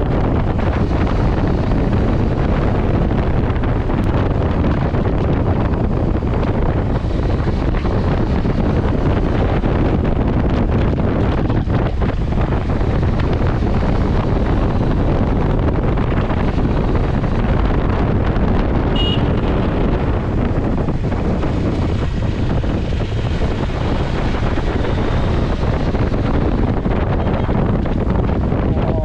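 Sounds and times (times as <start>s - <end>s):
steady rumble: 0.0s - 29.0s
wind buffeting microphone: 0.0s - 29.0s.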